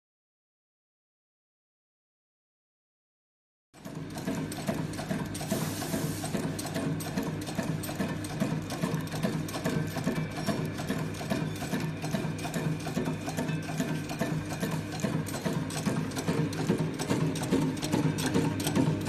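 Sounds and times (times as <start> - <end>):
machine mechanical strokes: 3.8 - 19.0
steady motor hum: 3.8 - 19.0.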